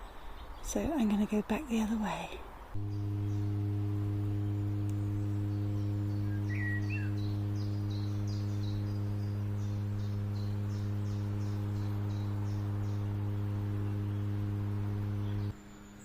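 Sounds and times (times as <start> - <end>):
transformer humming: 2.8 - 15.6.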